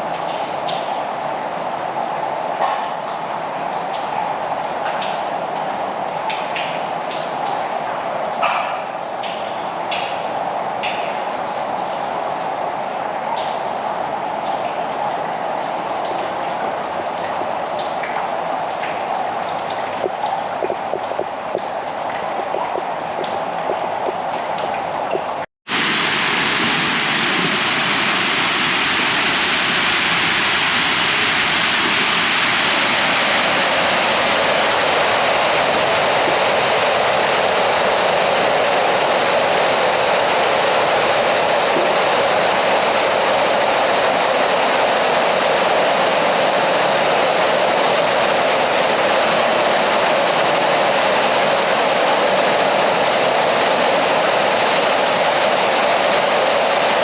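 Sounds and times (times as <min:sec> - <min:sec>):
water rushing: 0:14.0 - 0:57.0.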